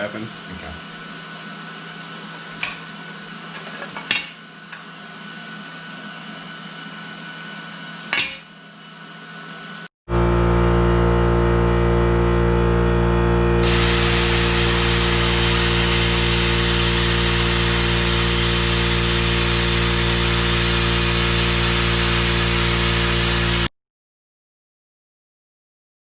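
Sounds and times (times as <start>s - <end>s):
loud mechanical hum: 0.0s - 23.7s
low shop hum: 0.0s - 23.7s
hiss: 13.6s - 23.7s.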